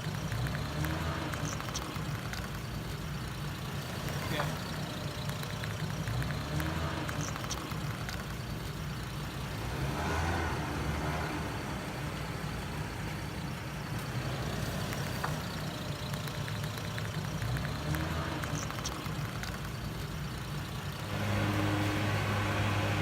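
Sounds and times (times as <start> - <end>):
faint clicks: 0.0 - 9.5, 13.1 - 21.0
car engine idling: 0.0 - 23.0.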